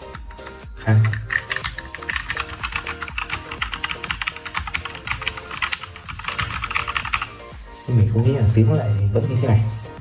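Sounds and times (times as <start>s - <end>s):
background music: 0.0s - 10.0s
mechanical keyboard key clacks: 1.0s - 7.3s.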